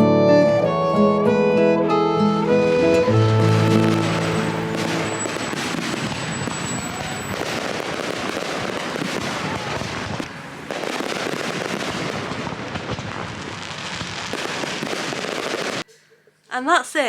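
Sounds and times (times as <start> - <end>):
fireworks bangs and crackles: 3.0 - 15.9.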